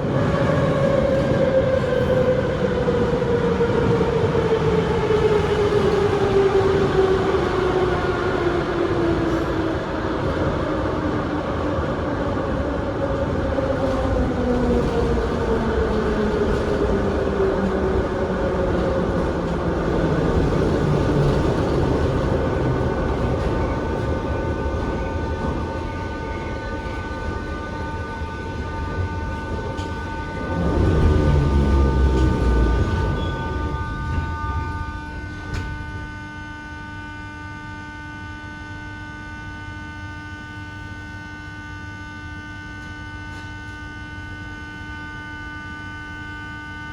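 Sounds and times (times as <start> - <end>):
wheels rumbling on rail: 0.0 - 36.3
train motor whine: 14.6 - 46.9.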